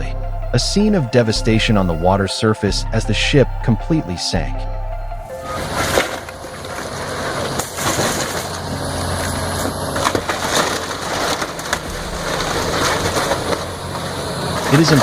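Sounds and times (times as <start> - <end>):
machine engine hum: 0.0 - 15.0
wood cracking and splintering: 5.7 - 15.0.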